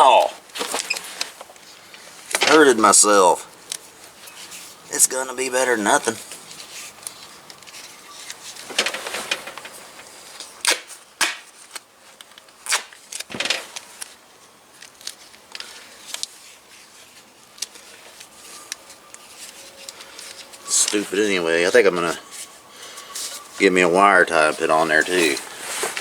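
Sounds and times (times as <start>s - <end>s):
tape ripping off roll: 8.3s - 11.8s, 12.6s - 14.2s.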